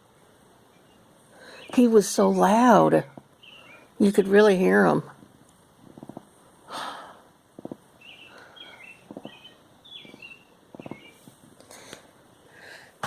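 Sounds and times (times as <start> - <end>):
small bird chirping: 0.7 - 2.2, 3.0 - 4.3, 7.6 - 11.3.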